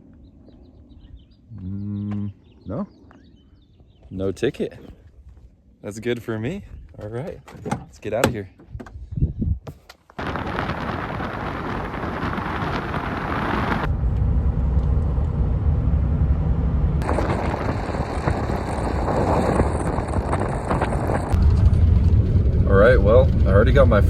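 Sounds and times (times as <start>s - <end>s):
wind noise: 8.6s - 24.0s
tyre noise on rough road: 9.7s - 15.0s, 17.0s - 24.0s
vehicle engine: 11.8s - 24.0s.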